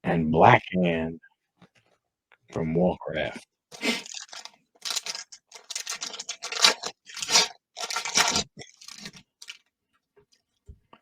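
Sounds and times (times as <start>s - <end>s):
plastic packaging crinkling: 3.8s - 9.7s.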